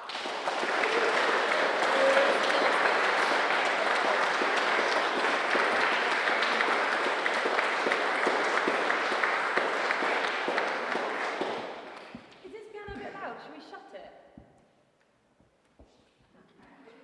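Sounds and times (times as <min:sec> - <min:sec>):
audience applauding: 0:00.0 - 0:12.3.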